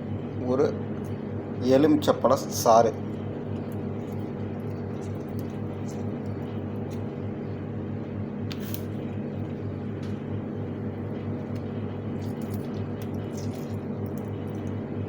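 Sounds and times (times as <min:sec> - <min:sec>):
steady low hum: 0:00.0 - 0:15.0
wet squelches and clicks: 0:03.0 - 0:07.1, 0:11.0 - 0:14.8.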